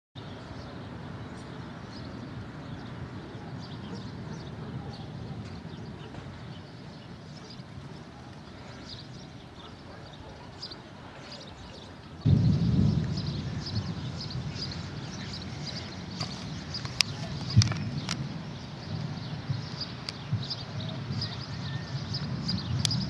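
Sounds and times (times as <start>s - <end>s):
wind blowing on microphone: 0.3s - 23.0s.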